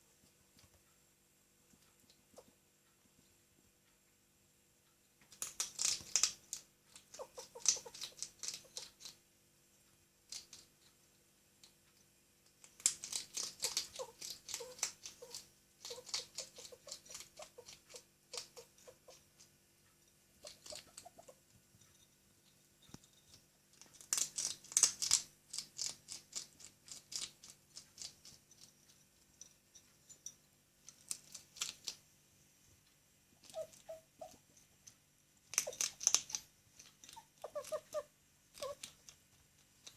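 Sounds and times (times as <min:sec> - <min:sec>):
hedgehog crunching food: 0:05.2 - 0:09.2, 0:10.2 - 0:11.0, 0:12.4 - 0:19.6, 0:20.3 - 0:21.4, 0:22.9 - 0:29.3, 0:30.2 - 0:32.1, 0:33.4 - 0:39.9.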